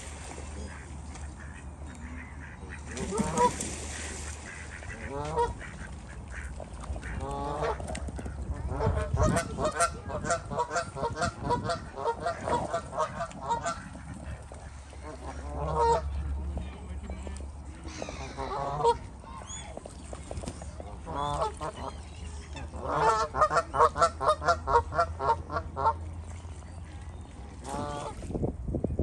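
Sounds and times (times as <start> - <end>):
geese honking: 0.6 - 19.1, 22.6 - 26.0.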